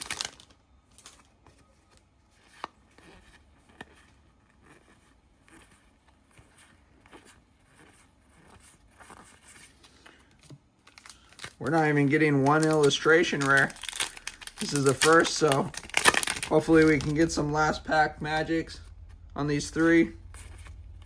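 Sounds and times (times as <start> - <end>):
card pack rustling: 0.0 - 1.6, 9.2 - 21.0.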